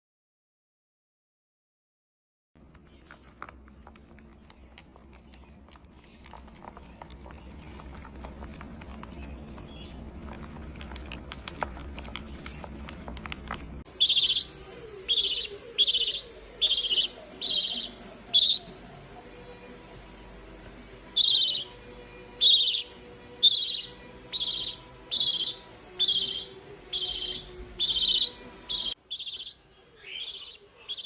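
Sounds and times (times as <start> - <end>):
parrot screeching: 14.0 - 14.5, 15.1 - 18.7, 21.2 - 21.7, 22.4 - 31.0.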